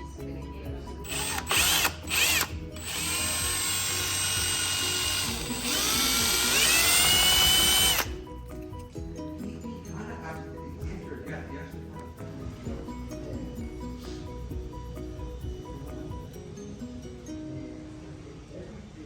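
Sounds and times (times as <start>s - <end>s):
background music: 0.0s - 19.0s
power drill motor: 1.0s - 8.2s.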